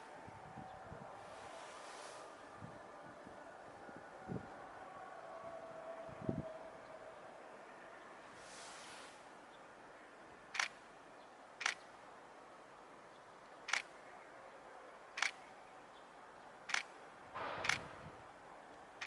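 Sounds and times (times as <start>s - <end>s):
faint steady hiss: 7.3s - 19.0s
camera shutter clicks: 10.6s - 10.8s, 11.6s - 11.8s, 13.7s - 13.9s, 15.2s - 15.4s, 16.7s - 16.9s, 17.6s - 17.9s.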